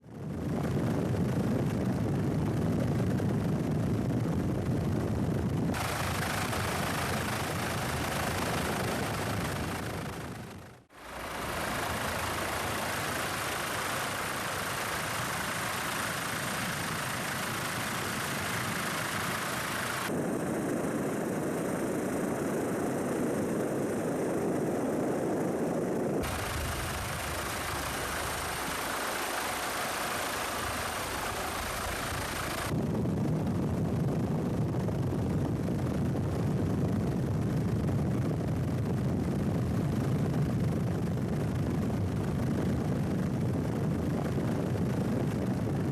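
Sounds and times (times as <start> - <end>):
engine-like mechanical noise with hiss: 11.0 - 20.1, 26.2 - 32.7.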